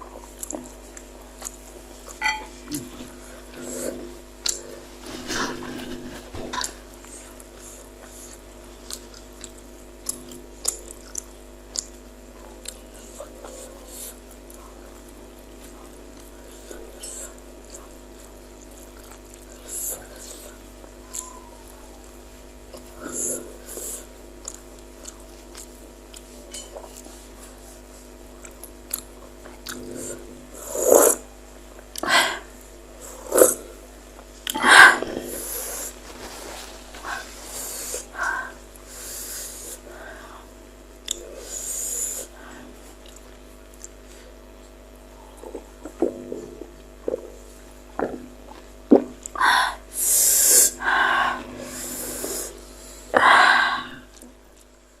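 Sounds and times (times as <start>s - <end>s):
faint steady hum: 0.0s - 55.0s
person chewing food: 0.2s - 38.9s, 41.0s - 49.4s
wet mouth clicks: 4.4s - 4.6s, 24.4s - 27.0s, 41.0s - 41.2s
person sniffing: 30.1s - 31.2s
person breathing hard: 32.0s - 33.5s, 49.4s - 54.1s.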